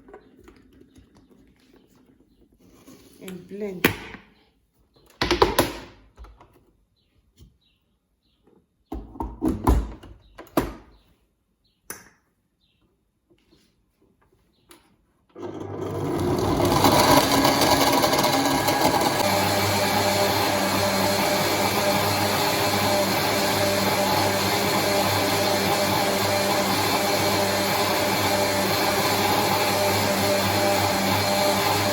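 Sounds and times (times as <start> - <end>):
electric blender running: 15.4 - 31.9.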